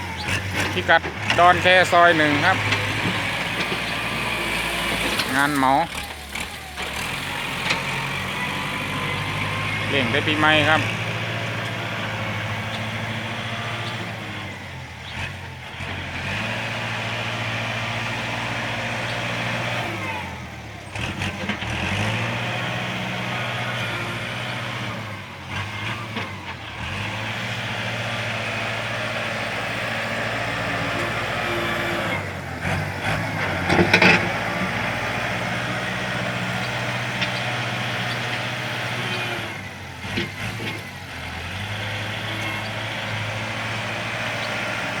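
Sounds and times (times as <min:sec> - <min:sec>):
tractor diesel engine running: 0:00.0 - 0:45.0.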